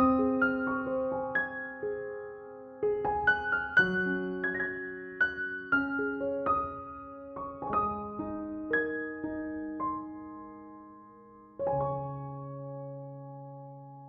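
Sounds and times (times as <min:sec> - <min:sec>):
soft piano music: 0:00.0 - 0:14.0.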